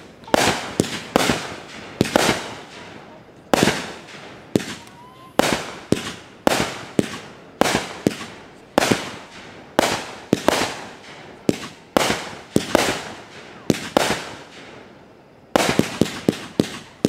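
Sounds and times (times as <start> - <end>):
fireworks sharp reports: 0.0 - 17.0.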